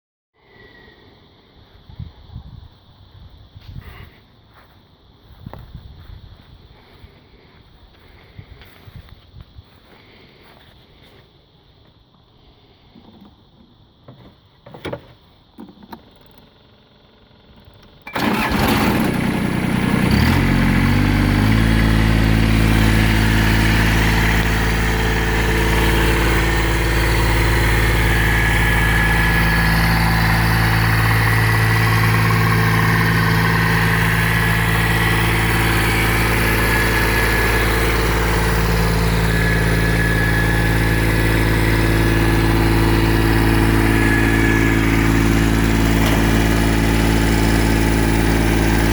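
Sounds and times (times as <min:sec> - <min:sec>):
diesel engine cranking: 0:17.6 - 0:48.9
diesel engine idling: 0:18.0 - 0:48.9.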